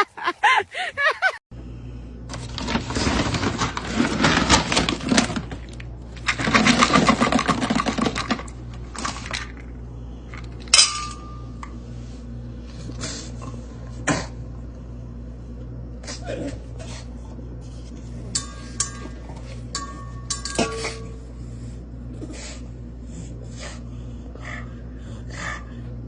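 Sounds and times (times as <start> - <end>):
steady low hum: 0.0 - 26.0
sharp ringing clink: 10.7 - 11.6, 18.4 - 21.2.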